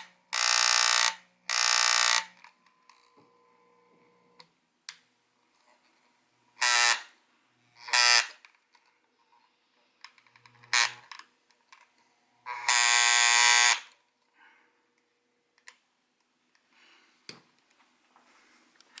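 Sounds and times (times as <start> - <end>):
electric massager buzzing: 0.0 - 4.4, 6.6 - 7.1, 7.8 - 8.4, 12.5 - 13.9.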